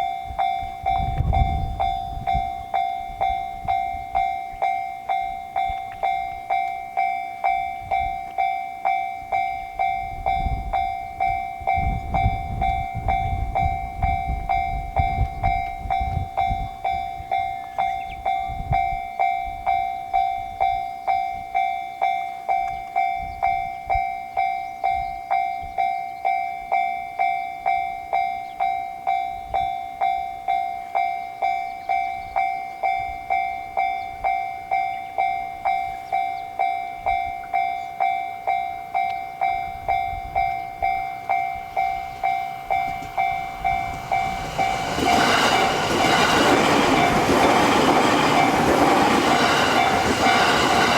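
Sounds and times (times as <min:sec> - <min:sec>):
level crossing bell ringing: 0:00.0 - 0:50.9
train passing: 0:30.0 - 0:50.9.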